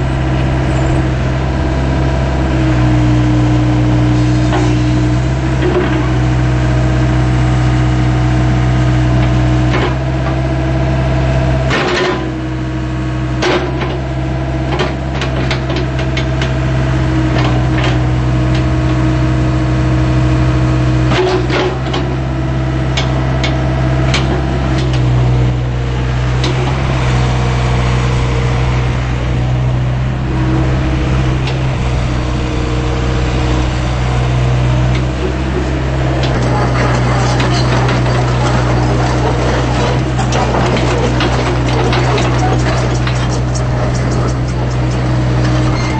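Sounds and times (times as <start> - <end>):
excavator diesel engine running: 0.0 - 45.9
machine knocks and clanks: 35.0 - 45.9.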